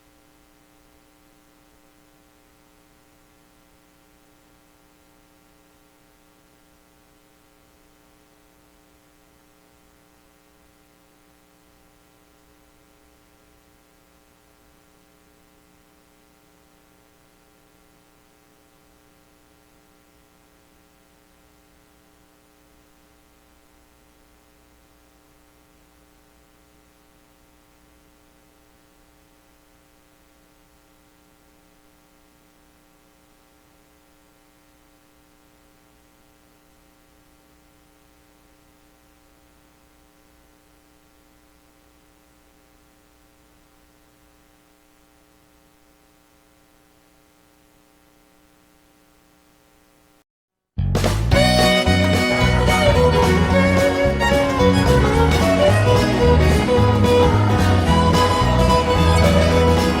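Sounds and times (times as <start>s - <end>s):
faint electrical hum with hiss: 0.0s - 50.3s.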